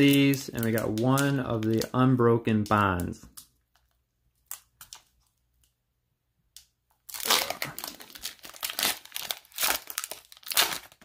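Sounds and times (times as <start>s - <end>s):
foil wrapper crinkling and tearing: 0.0s - 2.0s, 7.1s - 11.0s.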